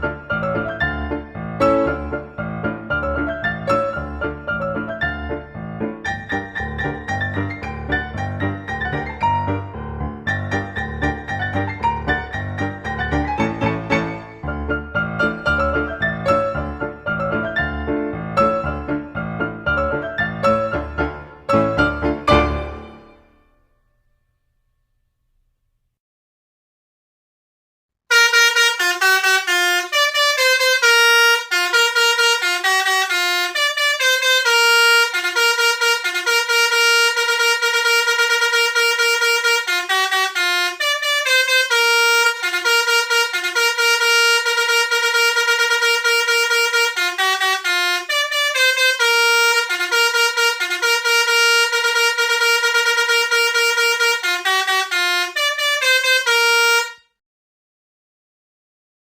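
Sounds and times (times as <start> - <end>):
multi-tone bus air horn melody: 0.0 - 23.6, 28.1 - 57.2.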